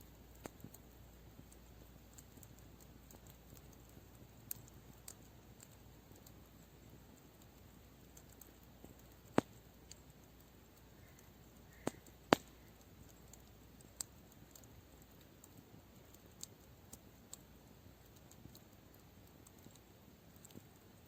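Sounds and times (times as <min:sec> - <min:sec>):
campfire wood crackling: 0:00.0 - 0:21.0
faint steady hiss: 0:00.0 - 0:21.0.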